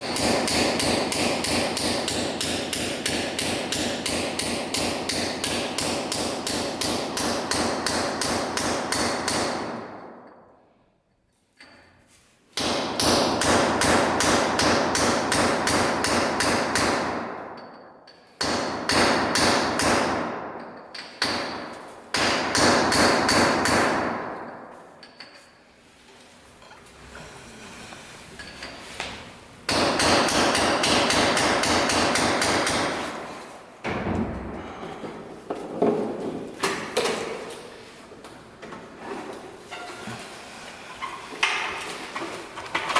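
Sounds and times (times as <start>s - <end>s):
power tool hammering: 0.0s - 9.9s, 12.6s - 17.4s, 18.4s - 20.4s, 21.0s - 24.4s, 29.7s - 34.0s.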